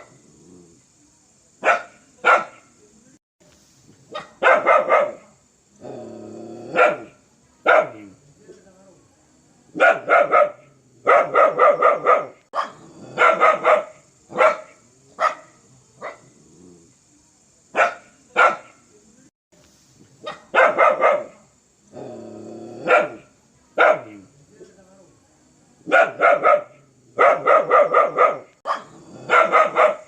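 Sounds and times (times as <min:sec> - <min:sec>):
dog barking fiercely: 0:01.6 - 0:02.6, 0:04.1 - 0:05.4, 0:06.7 - 0:08.1, 0:09.8 - 0:16.3, 0:17.8 - 0:18.8, 0:20.2 - 0:21.4, 0:22.8 - 0:23.2, 0:23.8 - 0:24.2, 0:25.9 - 0:30.0.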